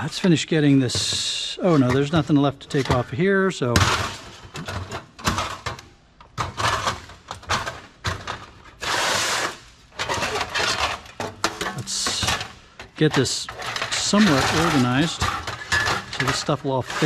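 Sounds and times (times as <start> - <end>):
computer parts knocking and clattering: 3.7 - 8.8, 10.0 - 17.0
scraping sliding sound: 6.4 - 17.0.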